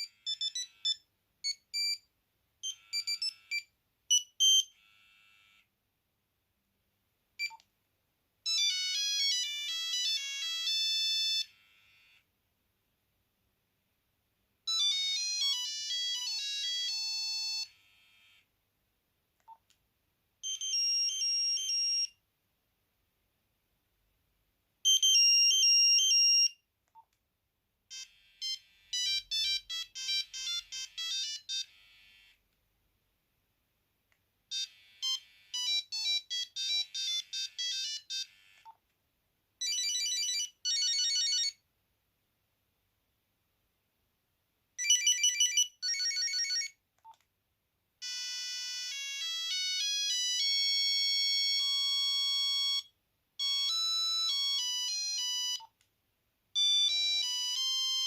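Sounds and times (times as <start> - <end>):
monophonic phone ringtones: 0.0 - 1.0, 2.6 - 5.6, 8.5 - 12.2, 14.7 - 18.4, 20.4 - 22.2, 27.9 - 32.4, 34.5 - 38.8, 39.6 - 41.6, 44.8 - 46.8, 48.0 - 55.8, 56.6 - 58.0.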